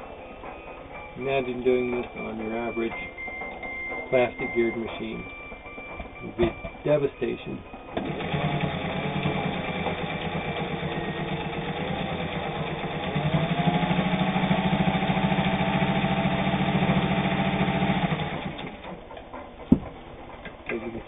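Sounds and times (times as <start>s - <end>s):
sewing machine stitching: 8.0s - 19.0s.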